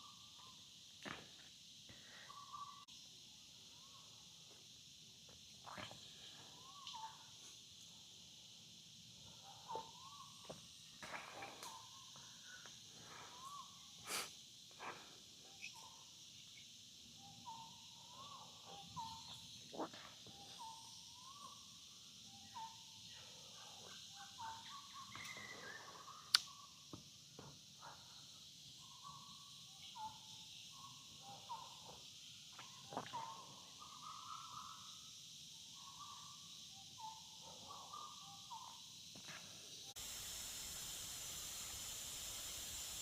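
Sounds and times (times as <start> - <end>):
insects chirring: 0.0 - 43.0
steady hiss: 12.4 - 17.6, 38.8 - 43.0.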